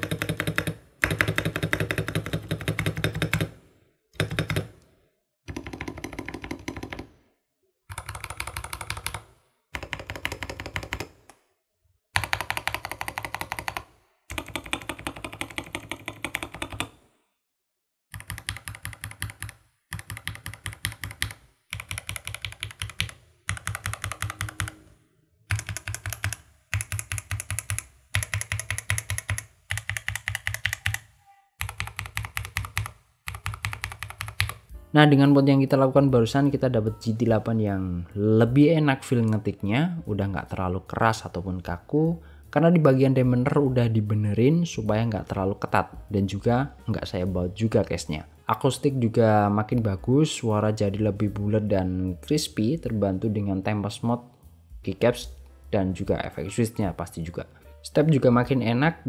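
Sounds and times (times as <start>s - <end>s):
mechanical keyboard typing: 0.0s - 3.6s, 4.2s - 4.8s, 5.5s - 7.1s, 7.9s - 11.3s, 12.2s - 17.0s, 18.1s - 24.9s, 25.5s - 34.7s.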